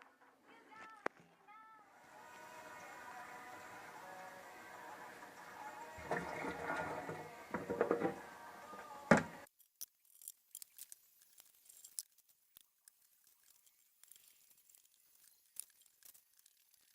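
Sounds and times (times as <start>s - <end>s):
faint background music: 0.0s - 9.5s
small hard objects clinking: 9.6s - 16.9s.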